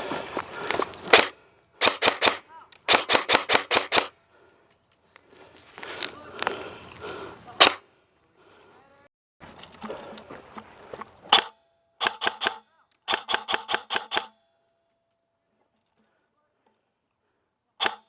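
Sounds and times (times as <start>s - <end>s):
rustling of movement: 0.0s - 11.8s
airsoft gun shots: 1.1s - 4.1s, 7.6s - 7.8s, 11.3s - 14.4s, 17.8s - 18.0s.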